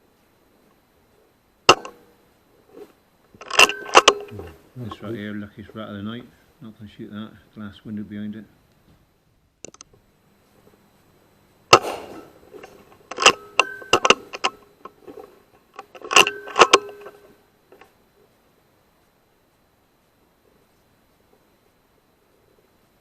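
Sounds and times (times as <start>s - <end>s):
sharp crack: 1.7s - 2.1s, 11.7s - 12.4s
metallic clicking and clatter: 3.4s - 4.6s, 11.7s - 17.9s.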